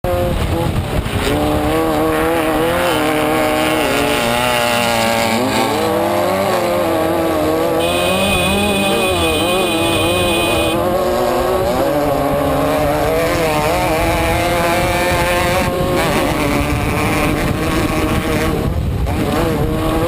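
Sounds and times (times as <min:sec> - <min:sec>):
race car engine revving: 0:01.2 - 0:20.0
thin high whine: 0:07.8 - 0:10.8.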